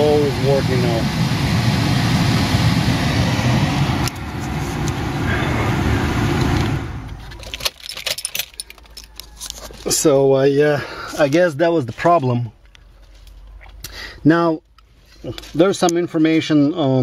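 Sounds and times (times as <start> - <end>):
blower fan rushing air: 0.0 - 8.6.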